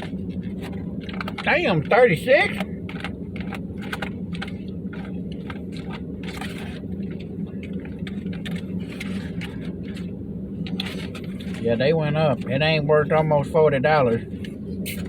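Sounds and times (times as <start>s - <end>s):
small clicks and scrapes: 0.0s - 1.6s, 2.6s - 11.7s
truck engine idling: 0.0s - 15.0s.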